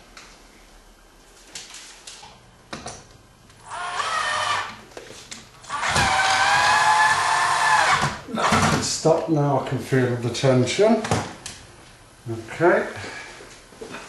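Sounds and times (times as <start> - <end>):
cordless drill motor whining: 3.6 - 4.8, 5.6 - 8.6.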